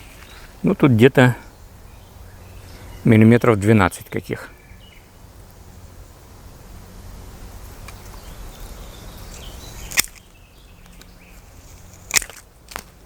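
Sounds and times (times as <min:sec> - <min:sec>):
branch snapping: 0:09.9 - 0:13.0.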